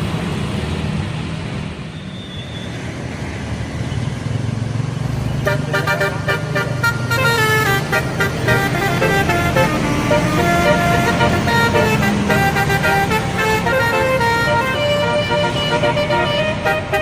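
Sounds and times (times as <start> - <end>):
bus engine rumble: 0.0 - 17.0
bus horn playing melody: 5.4 - 17.0.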